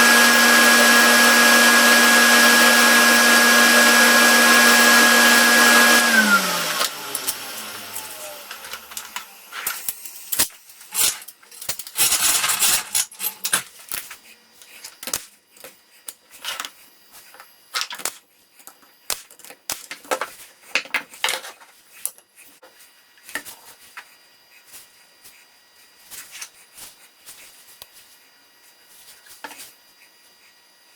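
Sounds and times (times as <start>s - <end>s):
electric motor spinning down: 0.0s - 9.6s.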